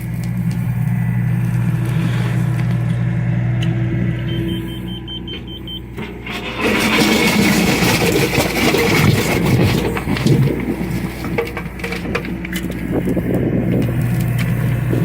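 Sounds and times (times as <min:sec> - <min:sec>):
excavator diesel engine running: 0:00.0 - 0:15.0
loud rough noise of machine working: 0:00.0 - 0:15.0
quick high beeps: 0:04.3 - 0:05.8.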